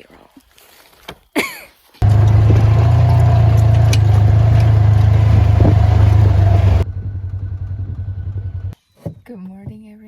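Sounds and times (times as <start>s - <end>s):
vehicle engine rumbling: 2.0s - 8.8s.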